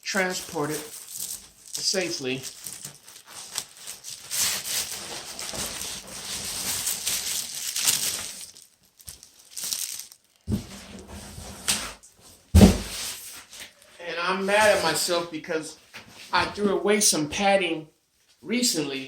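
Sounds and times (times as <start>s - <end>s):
packaging crinkling: 0.0s - 10.8s
loud thump: 12.6s - 13.0s.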